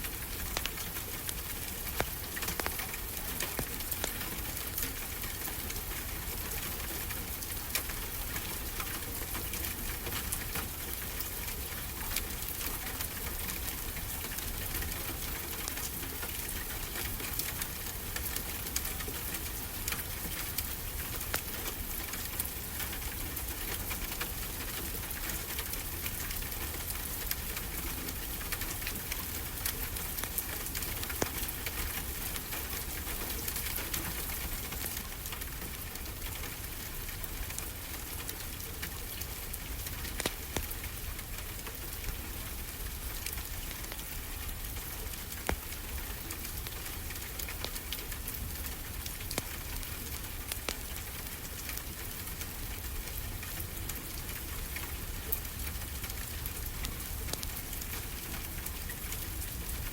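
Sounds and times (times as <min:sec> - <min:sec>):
wood fire crackling and popping: 0:00.3 - 0:04.6, 0:23.6 - 0:53.7, 0:54.3 - 0:59.9.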